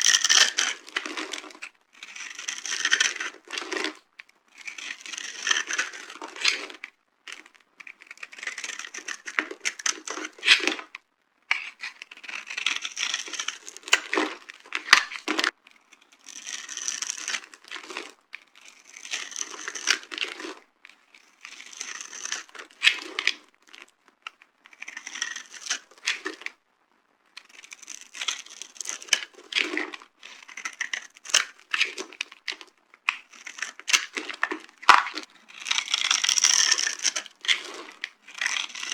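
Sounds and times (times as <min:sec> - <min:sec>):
soap being crushed by hand: 0:11.5 - 0:15.5, 0:27.4 - 0:38.9.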